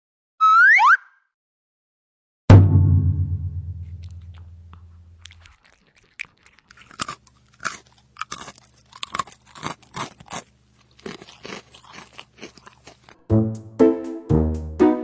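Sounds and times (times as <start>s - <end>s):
cat chewing and crunching food: 4.0s - 13.3s.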